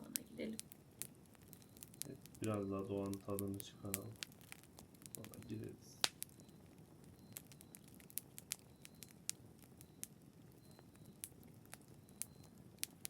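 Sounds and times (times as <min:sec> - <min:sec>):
campfire crackling: 0:00.0 - 0:13.0.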